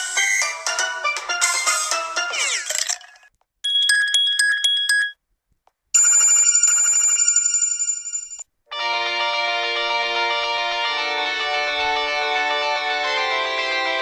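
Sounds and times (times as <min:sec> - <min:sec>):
high steady phone ring: 0:06.0 - 0:08.4.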